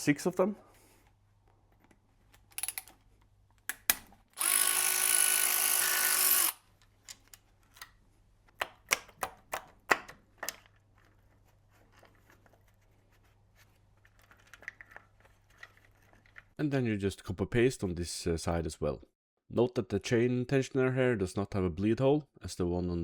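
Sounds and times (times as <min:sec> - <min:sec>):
power tool motor running: 0:04.4 - 0:06.6.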